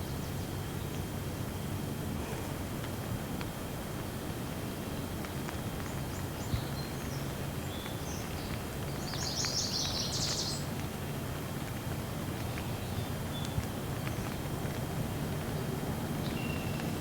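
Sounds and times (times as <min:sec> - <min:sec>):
light rain hissing: 0:00.0 - 0:17.0
birds chirping: 0:05.8 - 0:10.7.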